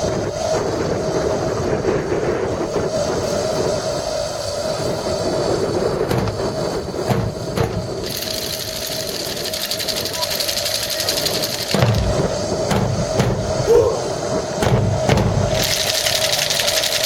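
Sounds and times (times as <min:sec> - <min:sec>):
wind buffeting microphone: 0:00.0 - 0:17.0
steady background din: 0:04.7 - 0:16.8.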